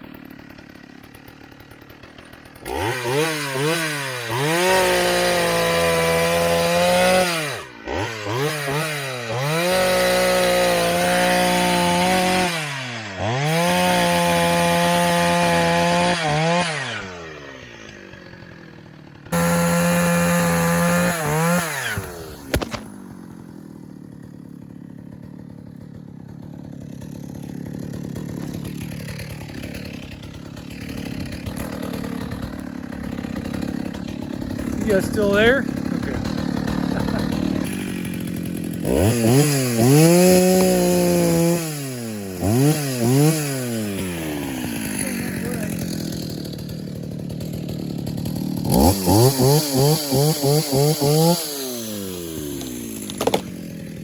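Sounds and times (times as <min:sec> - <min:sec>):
chainsaw running at high revs: 0:00.0 - 0:54.0.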